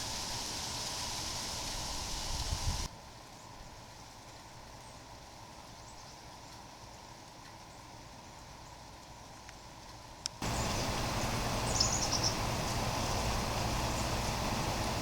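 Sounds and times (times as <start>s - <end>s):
faint background hiss: 0.0s - 15.0s
faint bird chirps: 10.4s - 14.1s.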